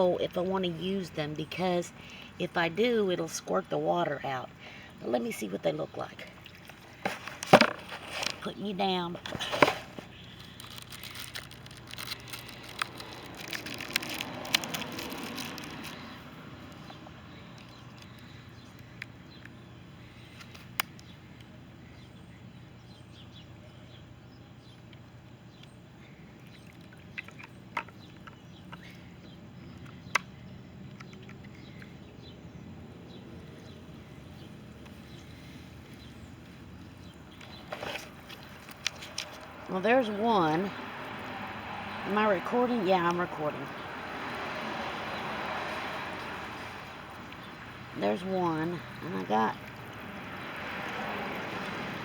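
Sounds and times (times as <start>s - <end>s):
handling knocks and clicks: 6.6s - 8.5s
fountain water splashing: 10.0s - 17.8s, 38.4s - 52.0s.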